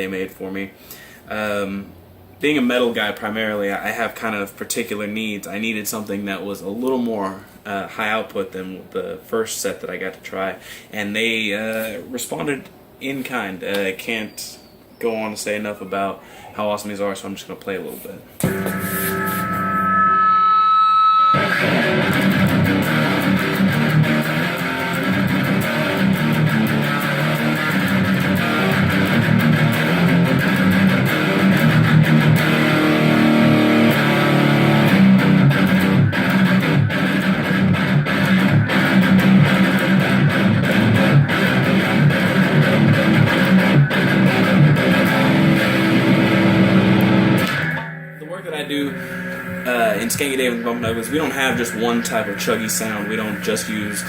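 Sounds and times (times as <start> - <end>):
distorted electric guitar riffs: 18.4 - 54.0.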